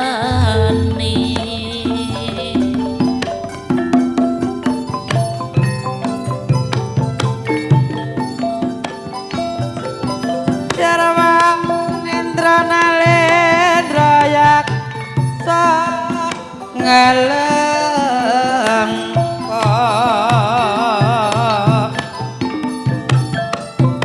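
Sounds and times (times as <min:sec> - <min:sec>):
woman singing: 0:00.0 - 0:03.4, 0:10.7 - 0:22.3
gamelan ensemble playing: 0:00.0 - 0:24.0
hand drum steady low beat: 0:00.3 - 0:07.9.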